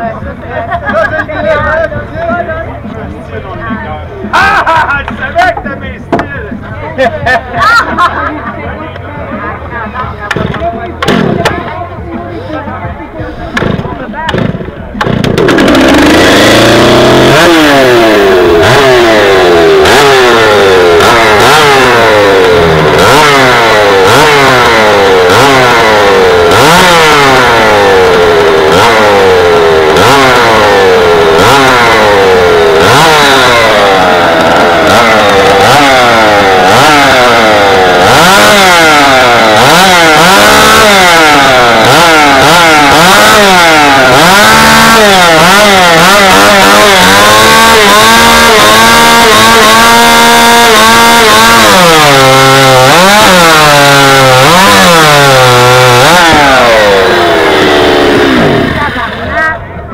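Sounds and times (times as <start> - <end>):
two-stroke chainsaw at high revs: 10.4 - 11.6, 13.6 - 59.6.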